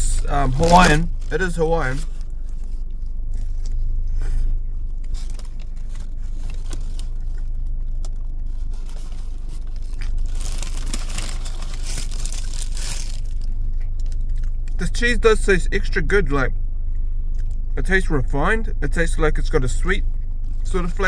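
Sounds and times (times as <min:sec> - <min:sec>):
low hum: 0:00.0 - 0:21.0
person chewing food: 0:02.0 - 0:14.8, 0:16.9 - 0:17.7
wrapper rustling: 0:04.9 - 0:14.2.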